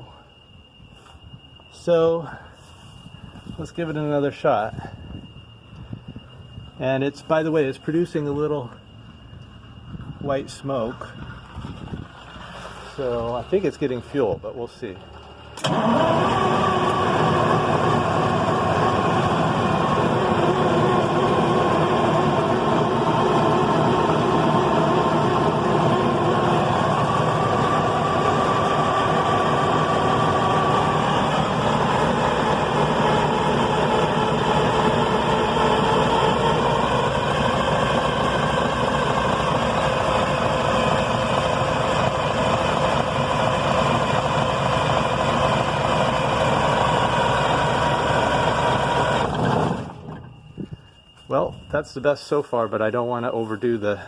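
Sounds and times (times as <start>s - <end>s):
diesel engine cranking on starter: 10.8s - 50.4s.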